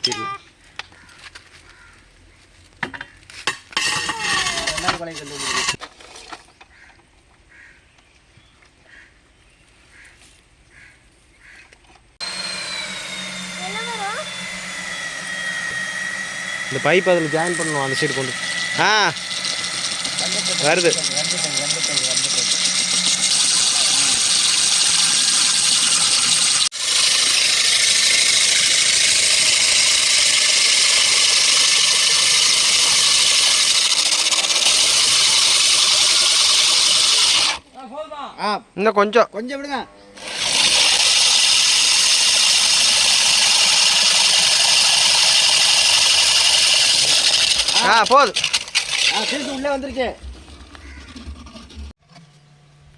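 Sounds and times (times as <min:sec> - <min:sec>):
faint bird calls: 0:00.2 - 0:02.1, 0:06.6 - 0:11.8, 0:50.8 - 0:51.2
core drill motor whining: 0:03.8 - 0:05.8, 0:12.2 - 0:37.6, 0:40.2 - 0:49.8.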